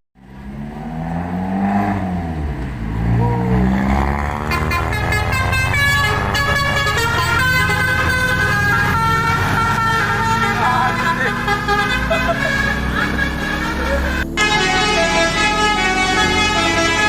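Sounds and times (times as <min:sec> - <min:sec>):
low engine sound: 0:02.0 - 0:17.0
bus horn playing a tune: 0:03.7 - 0:17.0.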